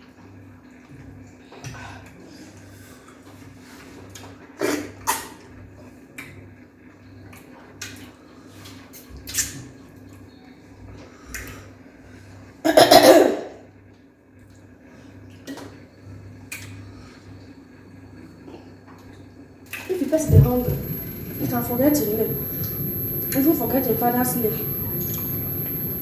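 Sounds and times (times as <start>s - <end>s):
low hum: 20.0s - 26.0s.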